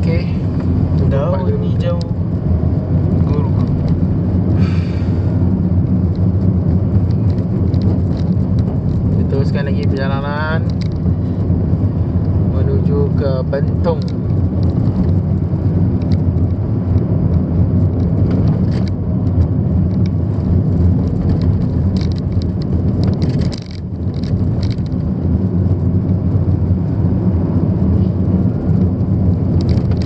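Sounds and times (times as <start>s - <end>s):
car driving rumble: 0.0s - 30.0s.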